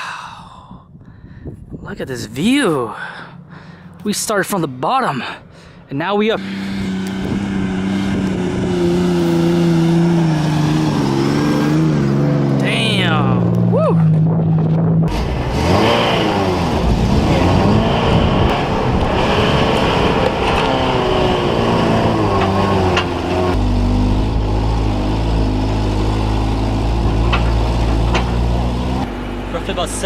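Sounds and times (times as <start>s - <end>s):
engine revving: 6.2s - 30.0s.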